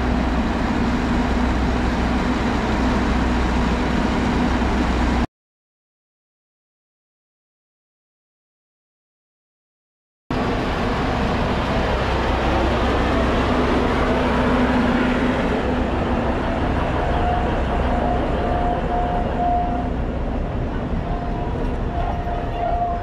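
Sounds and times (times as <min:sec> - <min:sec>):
train rumbling: 0:00.0 - 0:05.3, 0:10.3 - 0:23.0.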